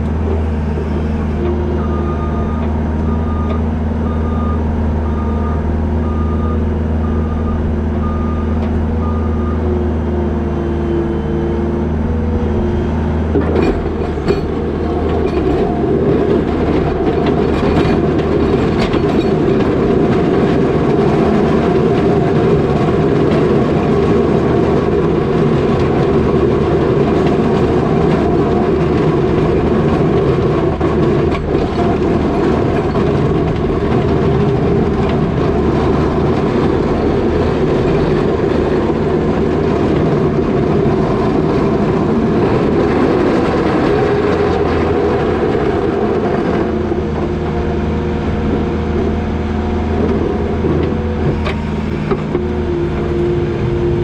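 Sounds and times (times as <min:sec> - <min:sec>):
diesel engine running: 0:00.0 - 0:54.0
reversing alarm beeping: 0:01.6 - 0:09.8.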